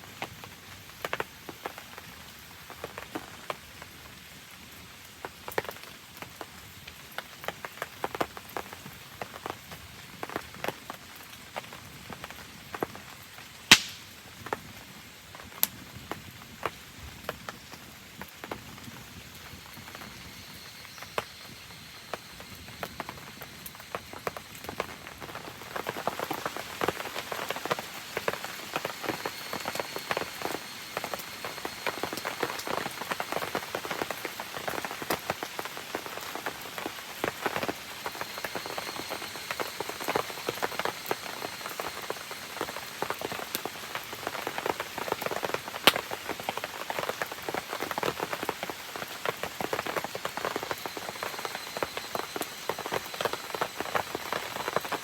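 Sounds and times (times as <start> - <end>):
rain pattering and dripping: 0.0 - 55.0
sharp pops: 13.7 - 14.2.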